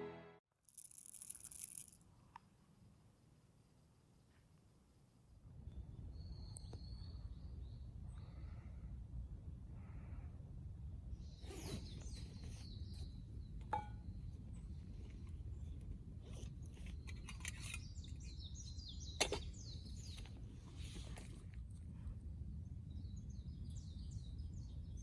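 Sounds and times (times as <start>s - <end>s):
faint bird chirps: 5.6s - 8.7s.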